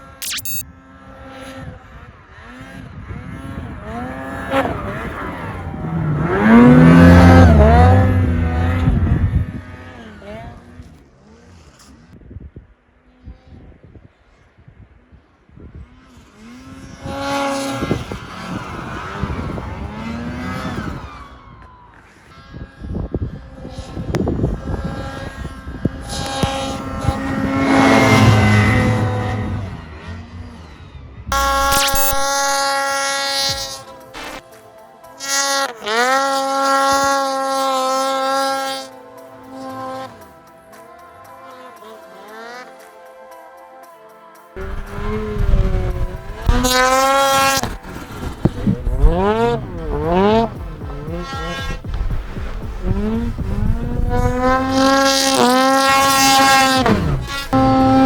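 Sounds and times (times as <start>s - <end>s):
snowmobile engine revving: 0.0s - 12.1s, 15.8s - 42.9s, 44.6s - 58.0s
sharp click: 0.2s - 0.6s.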